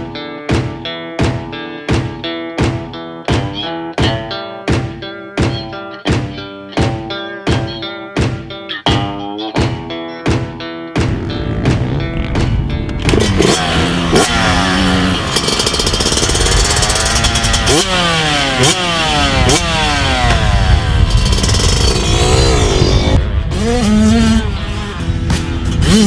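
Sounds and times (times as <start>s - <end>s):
two-stroke motorcycle engine revving: 11.0s - 26.0s.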